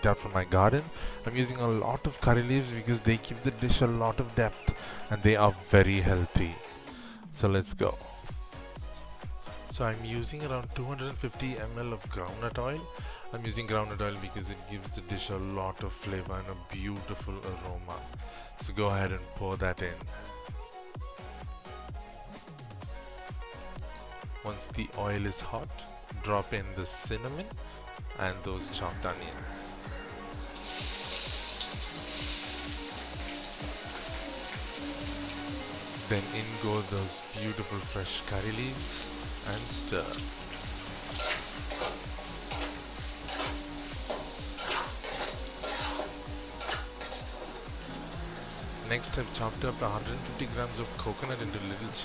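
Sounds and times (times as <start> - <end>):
electronic music with kick drum: 25.7 - 52.0
onions sizzling in oil: 30.3 - 52.0
spoon scraping pan: 40.0 - 48.8.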